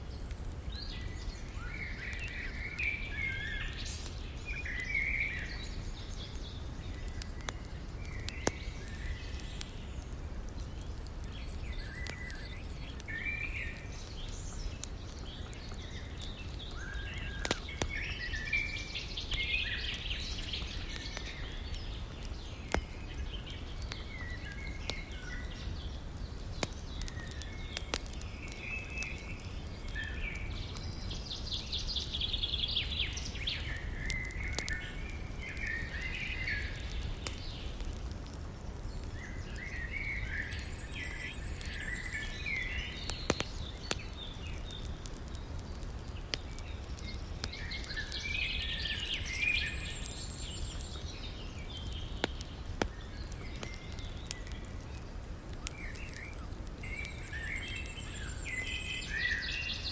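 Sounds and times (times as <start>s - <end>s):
wood fire crackling: 0.0s - 59.9s
birds chirping: 0.8s - 55.0s, 55.6s - 59.9s.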